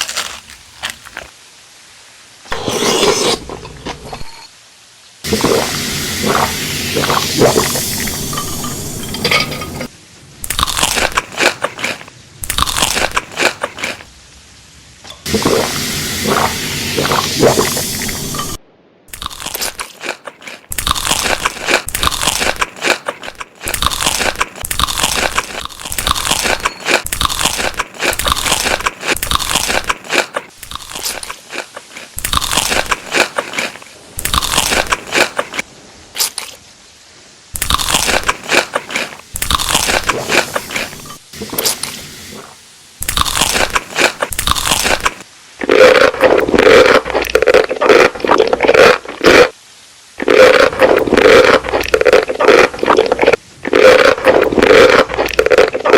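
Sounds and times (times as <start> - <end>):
crunchy food being chewed: 0.0 - 1.3, 10.4 - 14.1, 19.1 - 36.6, 37.6 - 49.6, 50.2 - 55.9.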